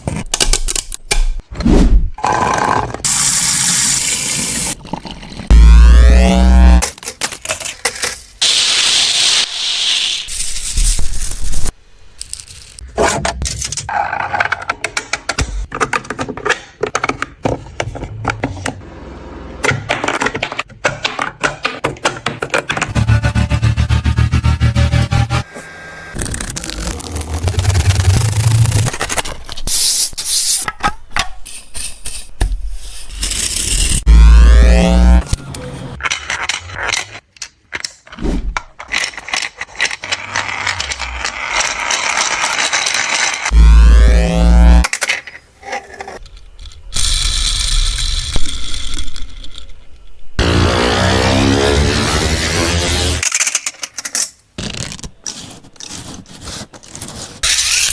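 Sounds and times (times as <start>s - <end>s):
hard objects clicking and clattering: 36.0s - 43.5s.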